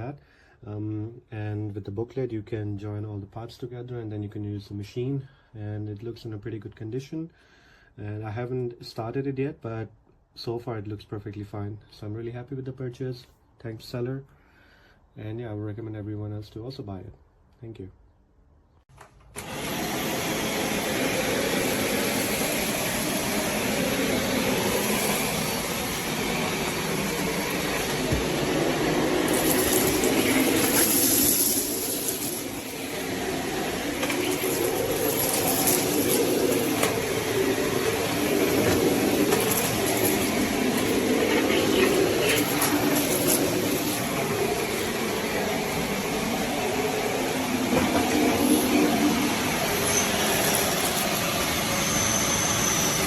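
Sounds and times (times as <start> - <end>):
vacuum cleaner whining: 19.3 - 53.0.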